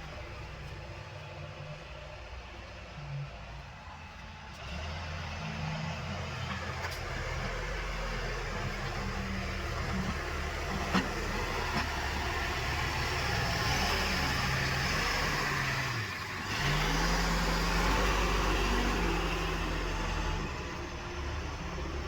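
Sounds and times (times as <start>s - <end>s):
diesel engine revving: 4.5s - 22.0s.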